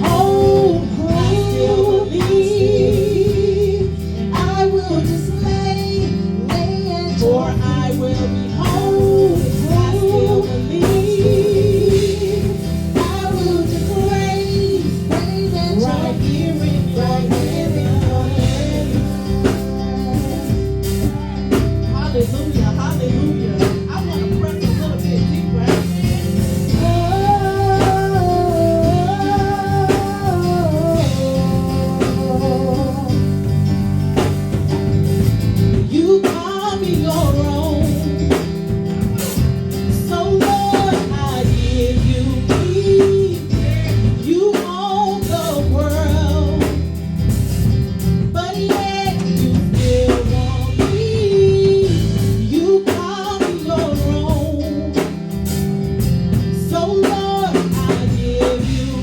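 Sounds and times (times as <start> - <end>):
low bass: 0.0 - 36.1, 36.9 - 44.3, 45.3 - 48.5, 49.2 - 52.6, 53.7 - 56.9, 57.5 - 59.0
sliding melody line: 0.0 - 44.5
gospel band playing instrumental: 0.0 - 59.0.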